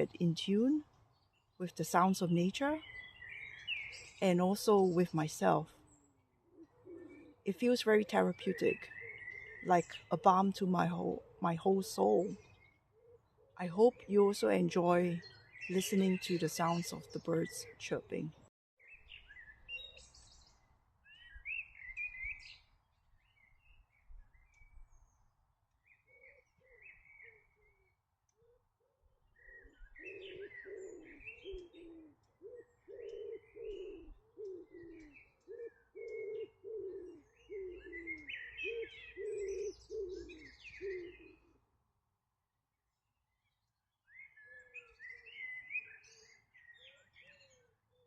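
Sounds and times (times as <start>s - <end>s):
small birds chirping: 0.0s - 28.6s, 29.2s - 41.5s, 43.2s - 48.0s
dove cooing: 6.4s - 7.5s, 29.8s - 41.6s.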